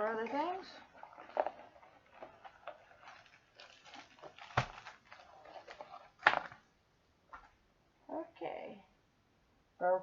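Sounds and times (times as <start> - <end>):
packaging rustling and crinkling: 0.8 - 6.7.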